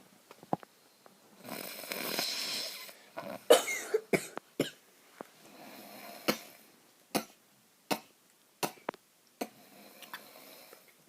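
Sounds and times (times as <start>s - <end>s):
person snoring: 1.4s - 3.5s, 5.5s - 6.6s, 9.4s - 10.9s.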